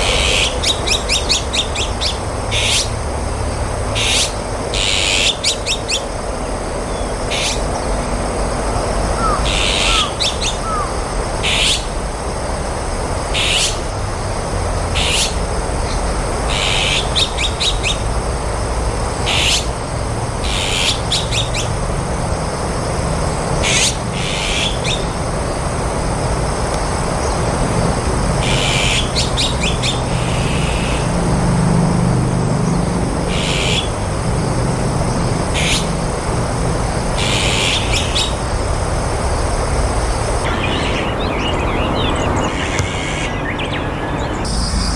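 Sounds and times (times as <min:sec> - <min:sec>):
magpies giving harsh calls: 0:00.0 - 0:03.0, 0:03.9 - 0:06.1, 0:06.9 - 0:07.8, 0:09.1 - 0:12.0, 0:13.3 - 0:13.9, 0:15.0 - 0:15.5, 0:16.5 - 0:18.1, 0:19.3 - 0:19.8, 0:20.4 - 0:21.8, 0:23.6 - 0:25.2, 0:28.4 - 0:31.2, 0:32.8 - 0:34.0, 0:35.5 - 0:35.9, 0:37.2 - 0:38.4, 0:40.4 - 0:44.8.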